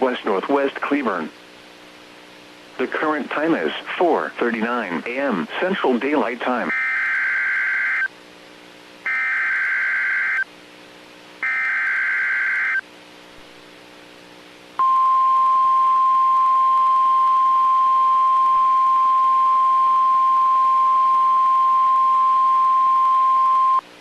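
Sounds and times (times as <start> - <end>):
steady warning alarm tone: 6.7 - 8.1, 9.1 - 10.4, 11.4 - 12.8
digital data tone bursts: 9.1 - 10.4, 11.4 - 12.8.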